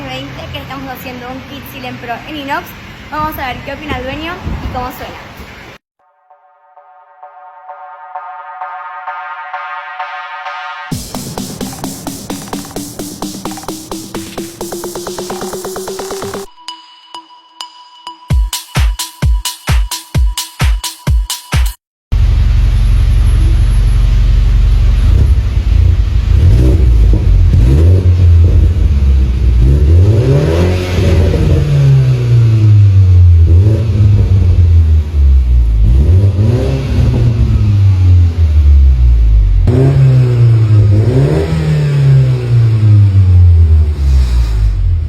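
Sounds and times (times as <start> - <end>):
car engine revving: 22.2 - 45.0.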